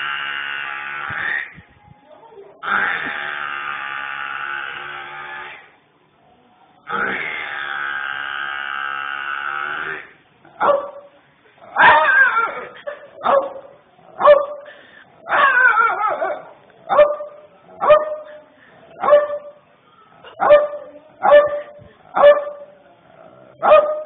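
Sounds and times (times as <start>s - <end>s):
dog yelping and barking: 11.7s - 14.6s, 15.3s - 18.3s, 19.0s - 19.6s, 20.3s - 22.7s.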